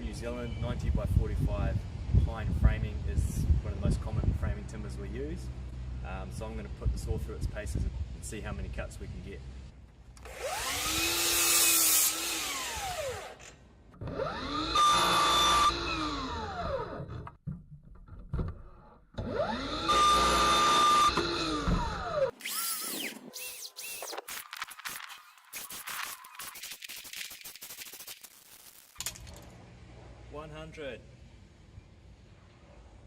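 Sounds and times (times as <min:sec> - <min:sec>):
mitre saw cutting wood: 0:10.2 - 0:17.0, 0:19.2 - 0:24.4.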